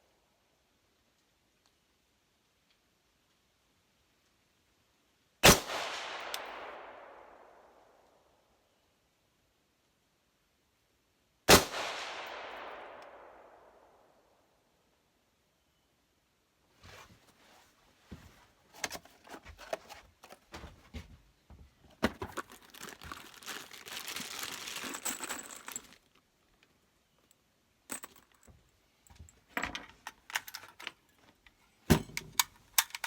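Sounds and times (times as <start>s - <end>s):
crinkling rustle: 16.8s - 21.2s, 21.8s - 26.8s
light metallic rattles: 27.9s - 33.0s
handling clicks: 32.0s - 33.0s.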